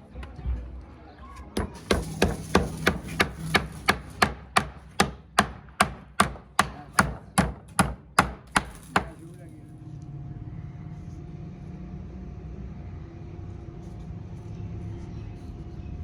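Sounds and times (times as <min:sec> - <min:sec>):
hammer blows: 0:01.6 - 0:09.2.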